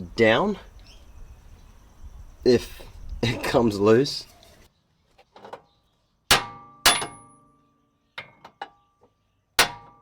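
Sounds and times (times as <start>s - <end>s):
hammer striking steel: 6.3s - 7.5s, 9.6s - 10.0s.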